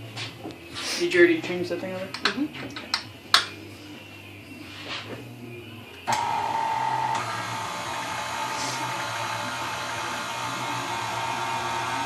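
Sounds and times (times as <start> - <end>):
pasta machine motor whine: 6.0 - 12.0.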